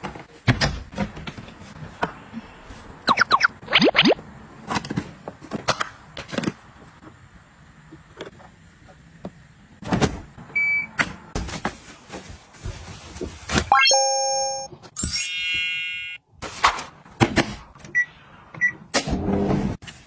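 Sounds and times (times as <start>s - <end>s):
electronic beep: 13.7s - 16.2s.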